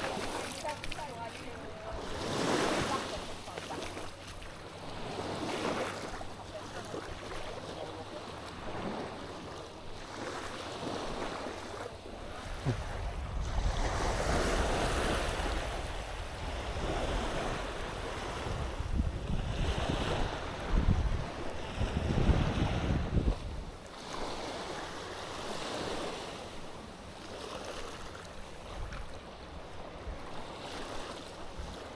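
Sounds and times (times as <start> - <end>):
waves washing onto shore: 0.0 - 31.9
wind buffeting microphone: 12.2 - 23.8.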